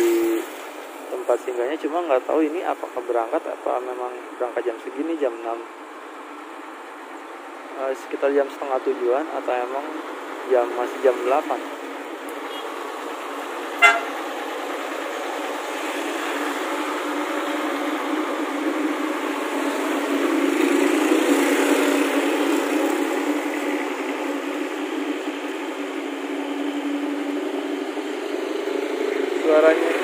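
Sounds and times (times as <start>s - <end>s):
bus engine and exhaust drone: 0.0s - 30.0s
vehicle horn toot: 12.4s - 12.7s, 13.8s - 14.2s.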